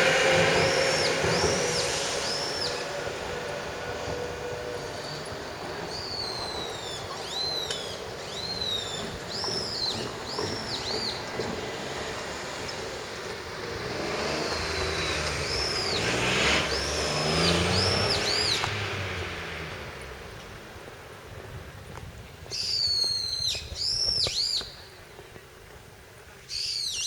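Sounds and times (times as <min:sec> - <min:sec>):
bird calling high arched notes: 0:00.0 - 0:03.5, 0:05.0 - 0:11.3
passing vehicle: 0:00.0 - 0:22.4.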